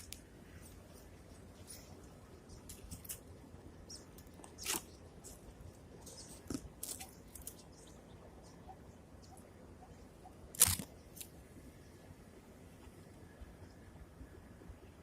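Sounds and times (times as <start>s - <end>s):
faint rustling and crackling: 0.0s - 7.9s.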